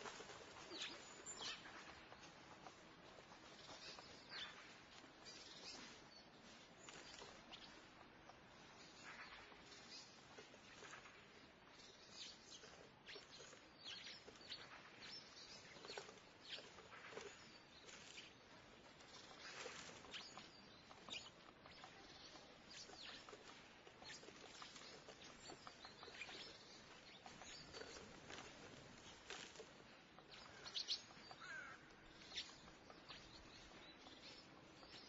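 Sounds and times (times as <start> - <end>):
faint town background noise: 0.0 - 35.0
small birds chirping: 0.0 - 35.0.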